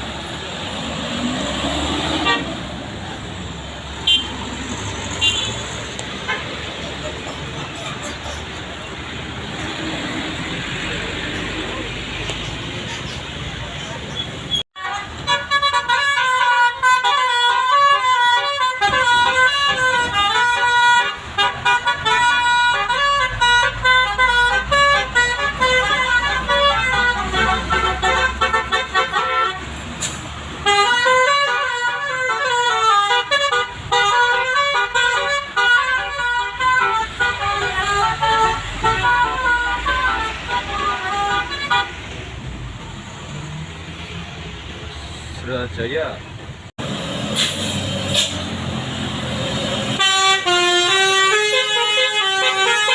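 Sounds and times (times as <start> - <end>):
vehicle engine rumbling: 0.0 - 51.8
multi-note air horn melody: 14.8 - 29.6, 50.0 - 52.9.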